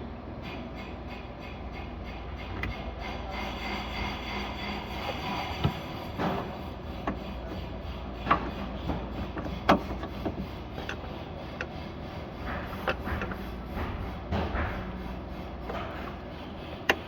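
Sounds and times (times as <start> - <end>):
steady low hum: 0.0 - 17.0
tools and engine parts clicking: 4.9 - 13.7, 15.7 - 17.0.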